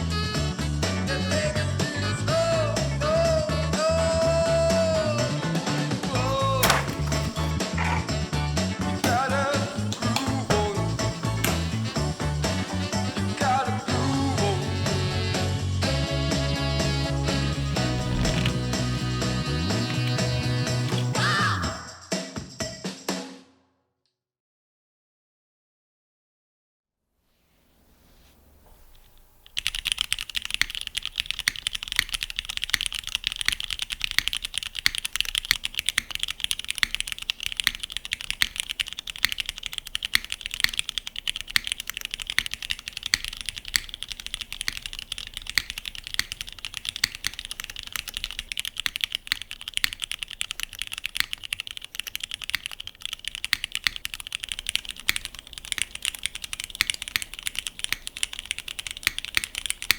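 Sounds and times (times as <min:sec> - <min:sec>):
fast typing on mechanical keyboard: 0:06.2 - 0:07.5, 0:08.9 - 0:15.2, 0:17.2 - 0:21.4, 0:29.5 - 0:59.9.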